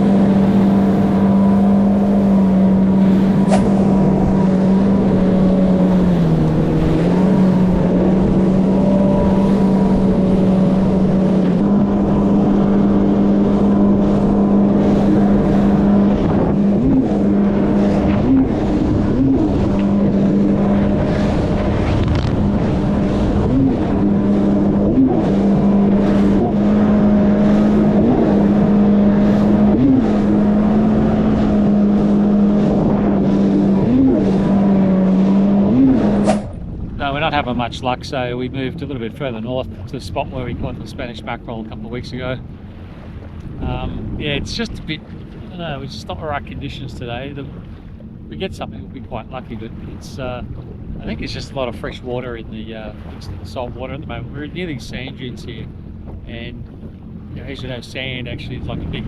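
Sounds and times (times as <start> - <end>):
jet ski engine running: 0.0 - 59.0.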